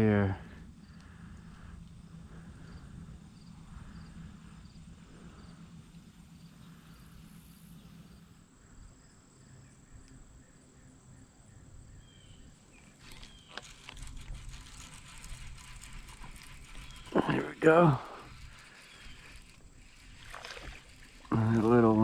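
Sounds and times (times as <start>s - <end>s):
crickets chirping: 0.0s - 22.0s
high insect trill: 0.0s - 22.0s
clicking and rattling: 12.8s - 21.3s.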